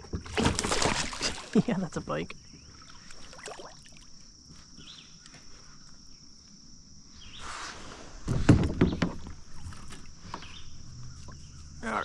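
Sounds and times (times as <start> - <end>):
water splashing: 0.0 - 2.0, 2.7 - 4.1
crickets chirping: 0.0 - 12.0.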